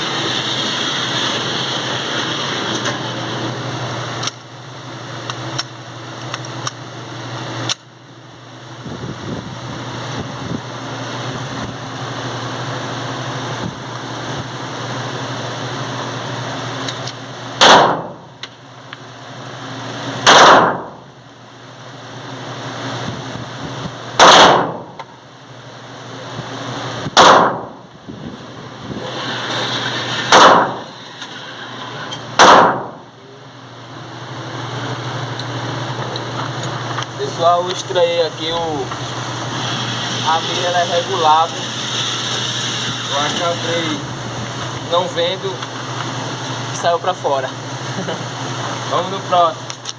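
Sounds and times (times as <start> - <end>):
steady low hum: 0.0 - 49.9
pistol shots with echo: 17.6 - 18.1, 20.2 - 20.9, 24.2 - 24.8, 27.2 - 27.7, 30.3 - 30.8, 32.4 - 33.0.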